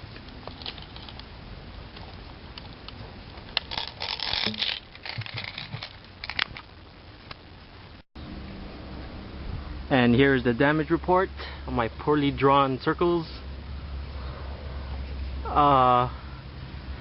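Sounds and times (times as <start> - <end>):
rustling and crinkling handling noise: 0.0 - 7.4.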